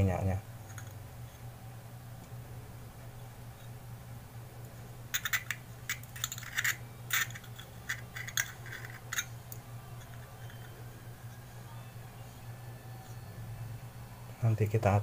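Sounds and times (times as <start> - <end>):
small metal clicks and scrapes: 5.1 - 9.3.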